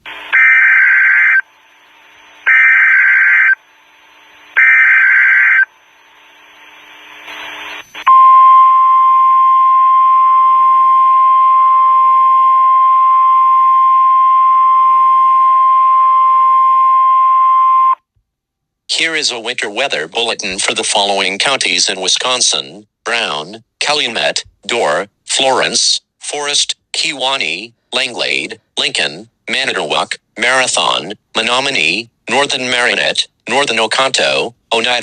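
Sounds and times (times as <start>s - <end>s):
radio hiss: 0.0s - 8.1s.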